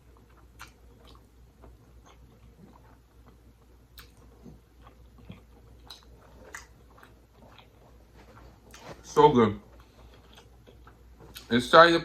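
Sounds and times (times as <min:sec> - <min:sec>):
close-up chewing: 0:00.0 - 0:11.5
wet mouth clicks: 0:03.9 - 0:07.7.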